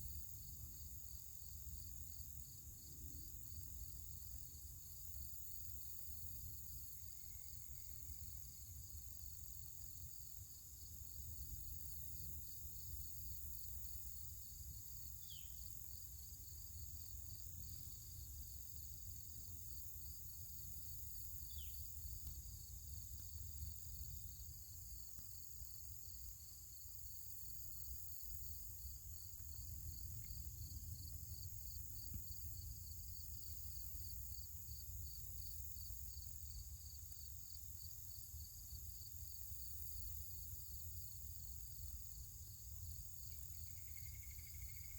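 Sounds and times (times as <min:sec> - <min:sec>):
rhythmic insect chirping: 0:00.2 - 0:44.9
insects buzzing: 0:21.1 - 0:23.4.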